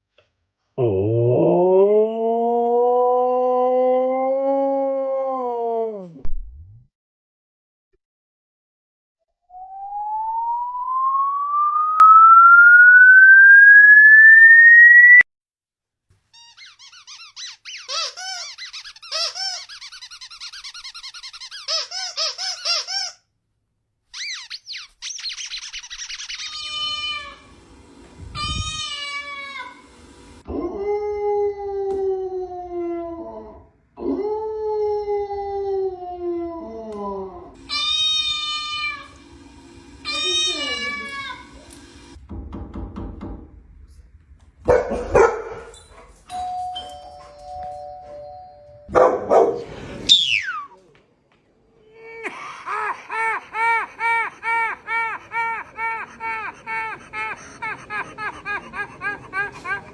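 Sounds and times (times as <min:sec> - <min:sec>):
dog howling: 0:01.4 - 0:06.2
rising electronic tone: 0:09.5 - 0:15.2
high squeaky chirping: 0:16.3 - 0:23.2, 0:24.1 - 0:27.4.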